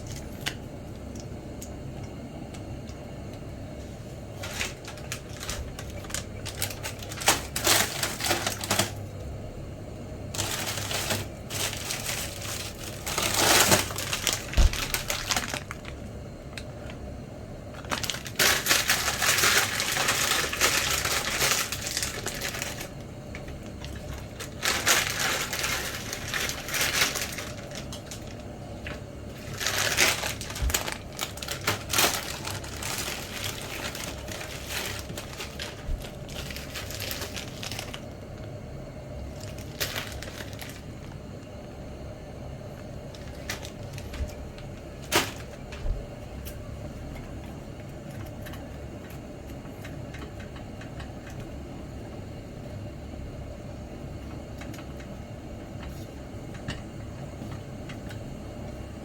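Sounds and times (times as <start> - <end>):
rapid clicking and crinkling: 0.0 - 9.3, 10.3 - 41.6, 42.7 - 59.0.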